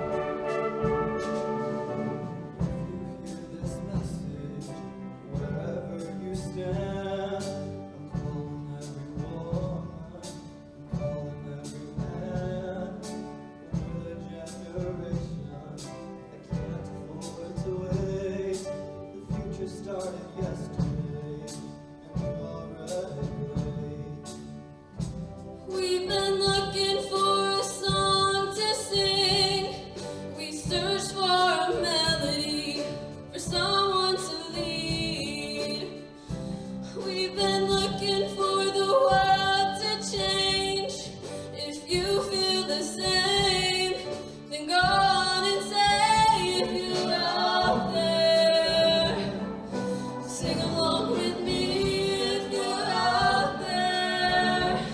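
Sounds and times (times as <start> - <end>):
choir singing: 0.0 - 10.4, 41.9 - 54.9
accompaniment with steady beat: 0.0 - 38.2, 39.1 - 54.9.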